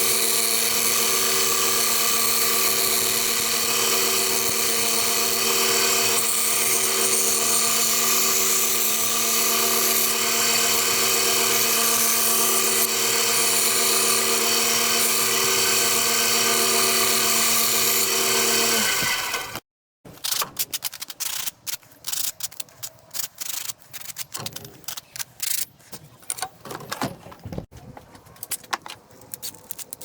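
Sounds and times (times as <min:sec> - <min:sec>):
small electric motor running: 0:00.0 - 0:19.6.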